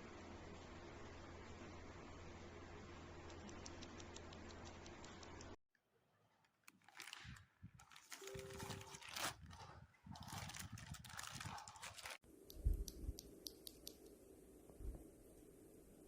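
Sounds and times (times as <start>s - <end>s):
steady hiss and low hum: 12.3s - 16.0s.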